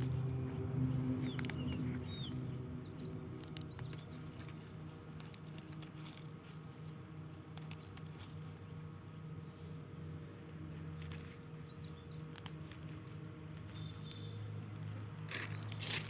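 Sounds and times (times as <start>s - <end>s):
spinach stems snapping: 0.0s - 6.4s, 7.4s - 8.8s, 12.2s - 16.0s
steady low hum: 0.0s - 15.7s.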